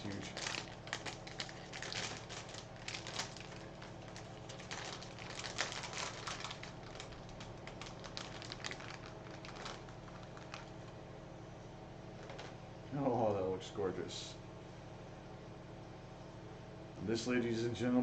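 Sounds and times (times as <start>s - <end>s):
packaging rustling and crinkling: 0.0s - 11.0s, 12.2s - 12.6s.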